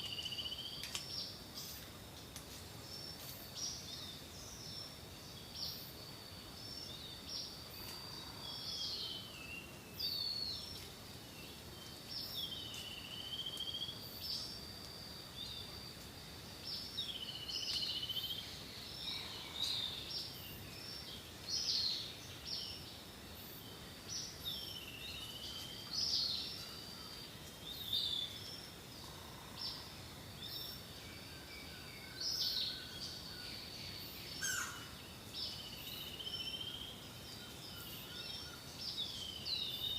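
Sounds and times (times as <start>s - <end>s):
soft background hiss: 0.0s - 39.9s
birds chirping: 16.6s - 39.9s.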